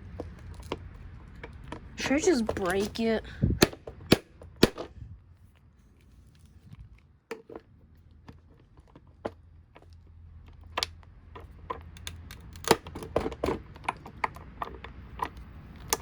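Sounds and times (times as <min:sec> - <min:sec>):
plastic parts knocking: 0:07.3 - 0:16.0
plastic parts clicking: 0:08.3 - 0:16.0.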